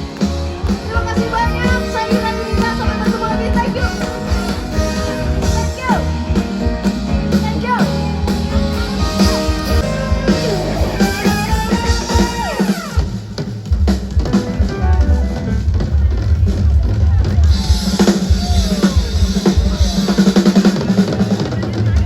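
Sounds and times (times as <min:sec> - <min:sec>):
guitar with sliding notes: 0:00.0 - 0:13.2
live pop-rock band: 0:00.0 - 0:22.0.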